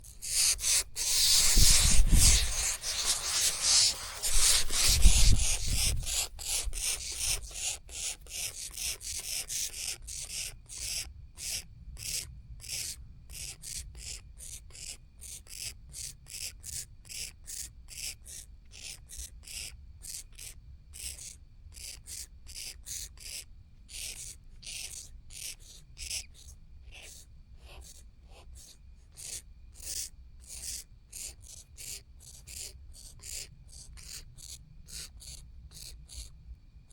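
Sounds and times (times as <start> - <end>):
owl chicks rasping begging calls: 0.0 - 12.9.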